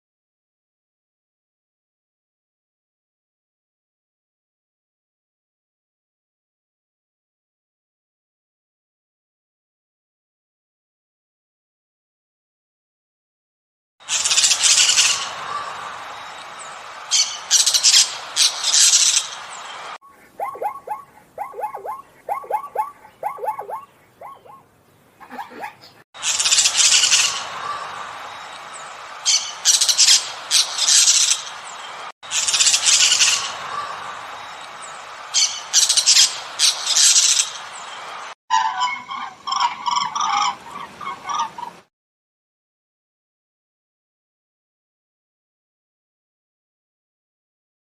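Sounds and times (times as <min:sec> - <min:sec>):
background noise: 0:14.1 - 0:41.9
birds chirping: 0:14.4 - 0:32.1
short quick bird calls: 0:20.1 - 0:24.6.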